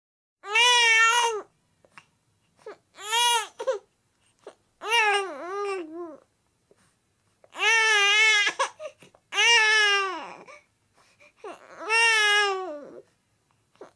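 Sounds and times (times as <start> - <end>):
baby crying: 0.4 - 1.5, 2.6 - 3.9, 4.8 - 6.2, 7.5 - 10.6, 11.4 - 13.0.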